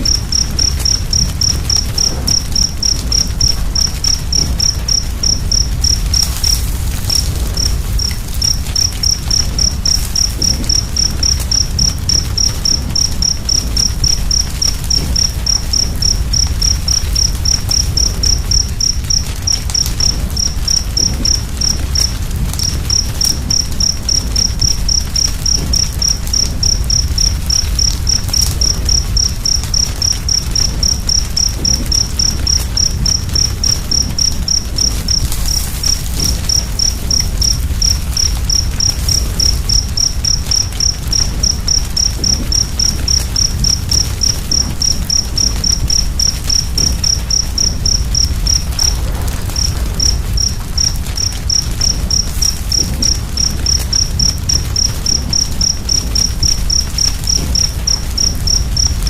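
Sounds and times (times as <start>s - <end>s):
cricket chirping: 0.0s - 59.0s
wood fire crackling: 0.0s - 59.0s.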